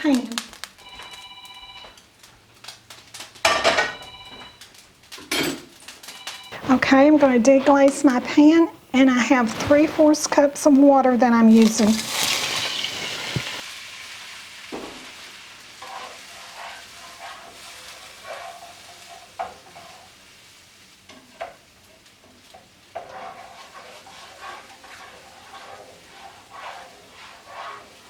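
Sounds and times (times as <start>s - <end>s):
water sizzling in hot skillet: 0.0s - 28.0s
utensil scraping pan: 6.6s - 13.6s, 15.8s - 20.1s, 23.0s - 28.0s.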